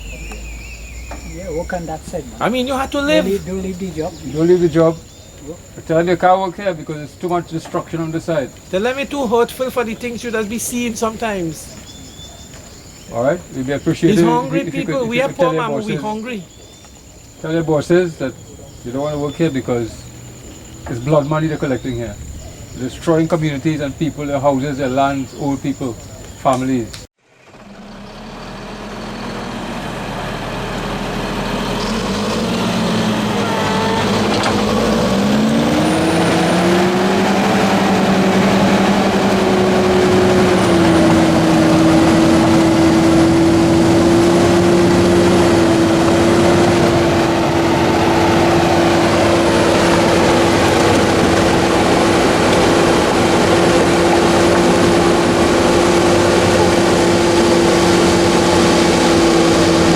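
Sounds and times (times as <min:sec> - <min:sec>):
bulldozer diesel engine revving: 0:00.0 - 0:10.7, 0:13.1 - 0:16.6, 0:27.4 - 0:59.9.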